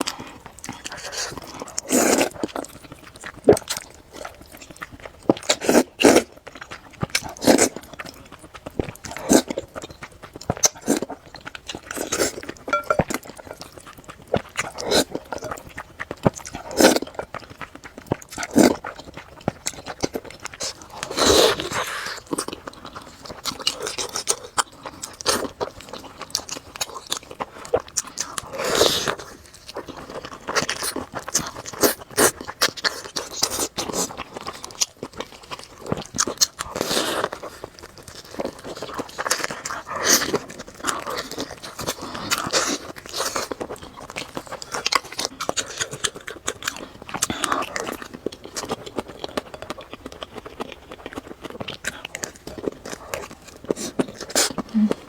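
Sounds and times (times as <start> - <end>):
chewing: 0.0 - 55.0.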